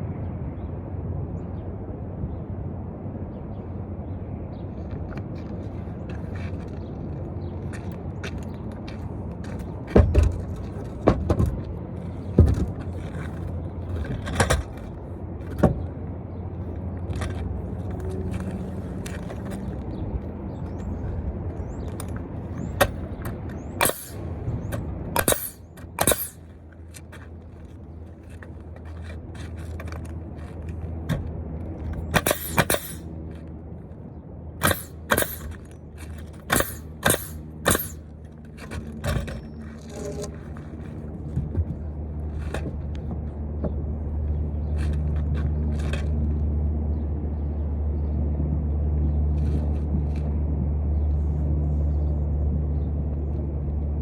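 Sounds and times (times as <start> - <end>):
steady low hum: 0.0 - 54.0
hammer nailing into wood: 23.8 - 24.3, 25.2 - 26.4, 32.2 - 33.0, 34.6 - 35.6, 36.5 - 38.0.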